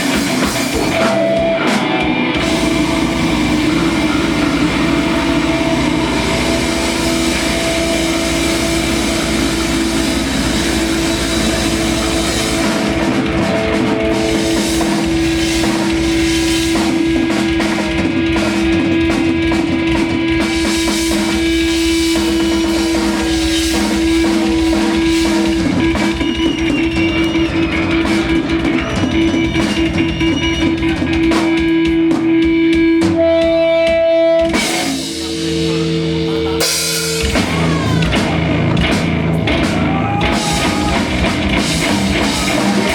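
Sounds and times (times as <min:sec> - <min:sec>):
busy drumming: 0:00.0 - 0:42.9
live rock band playing: 0:00.0 - 0:42.9
sustained electric guitar note: 0:01.0 - 0:16.8.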